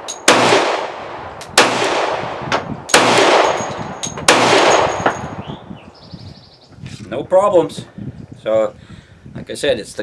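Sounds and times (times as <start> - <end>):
pistol shots with echo: 0.0 - 5.4.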